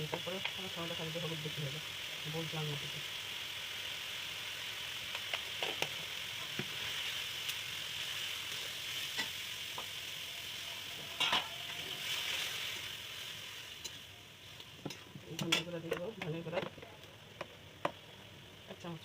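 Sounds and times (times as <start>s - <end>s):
spices sizzling in hot oil: 0.0s - 19.0s
spatula scraping a pan: 11.0s - 12.8s.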